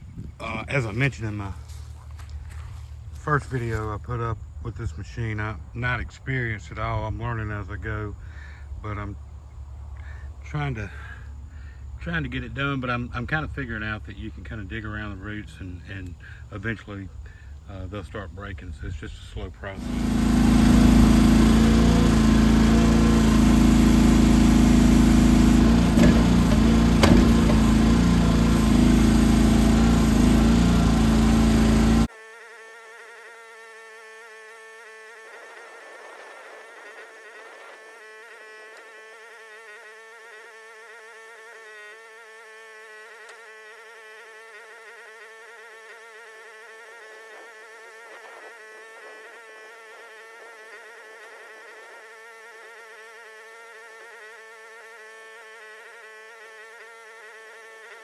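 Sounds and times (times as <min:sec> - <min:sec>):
excavator engine running: 0:19.8 - 0:32.1.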